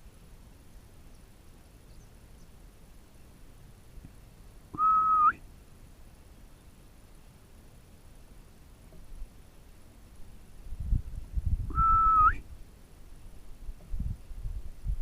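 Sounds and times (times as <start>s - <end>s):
loud whistle: 4.8s - 5.4s, 11.7s - 12.4s.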